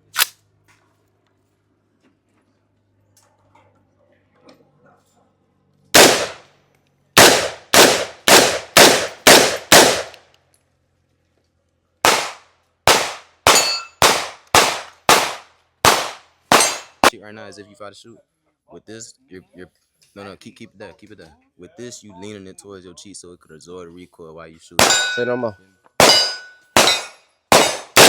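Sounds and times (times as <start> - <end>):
gunshots: 6.0 - 6.5, 7.2 - 10.2, 12.0 - 17.1, 24.8 - 25.4, 26.0 - 28.0.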